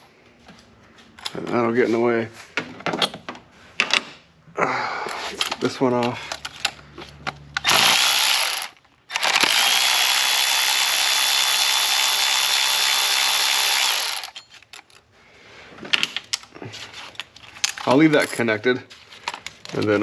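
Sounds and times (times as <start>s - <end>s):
electric ratchet whining: 7.6s - 14.4s.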